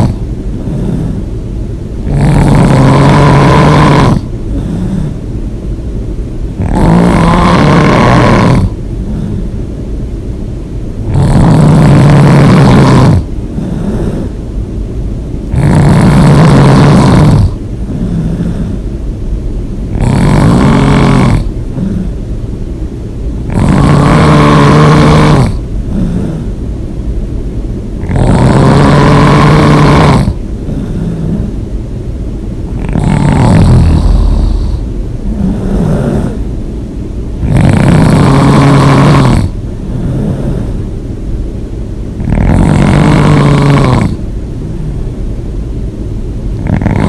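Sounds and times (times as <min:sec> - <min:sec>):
person snoring loudly: 0:00.0 - 0:01.3, 0:02.0 - 0:05.2, 0:06.6 - 0:09.6, 0:11.0 - 0:14.4, 0:15.5 - 0:18.8, 0:19.9 - 0:22.1, 0:23.5 - 0:26.5, 0:28.0 - 0:31.6, 0:32.7 - 0:36.5, 0:37.4 - 0:40.8, 0:42.2 - 0:45.1, 0:46.6 - 0:47.0
quiet breathing: 0:00.0 - 0:02.2, 0:03.2 - 0:06.8, 0:08.6 - 0:11.9, 0:13.1 - 0:15.0, 0:17.2 - 0:22.5, 0:23.3 - 0:46.9.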